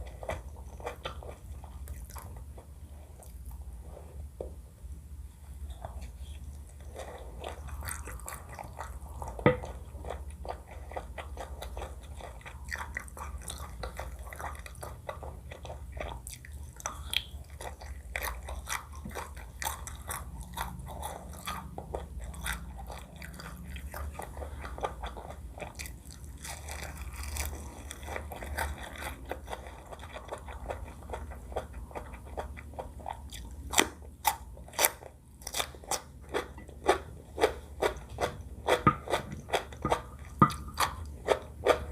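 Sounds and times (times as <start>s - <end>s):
chewing and biting food: 0.0s - 3.6s, 5.8s - 41.9s.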